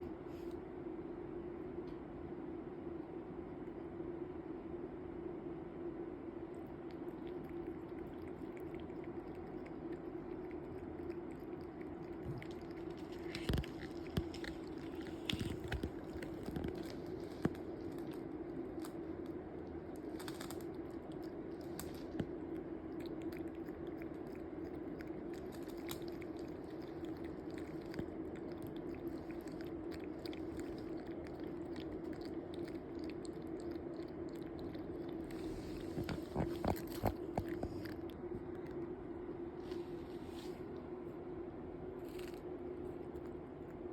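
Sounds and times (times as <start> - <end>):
steady low hum: 0.0 - 43.9
cat lapping water: 6.6 - 19.0, 20.6 - 38.8.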